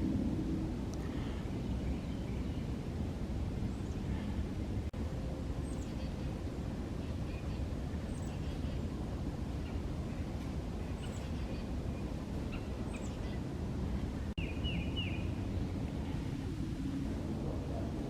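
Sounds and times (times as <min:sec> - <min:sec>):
birds chirping: 0:05.4 - 0:16.3.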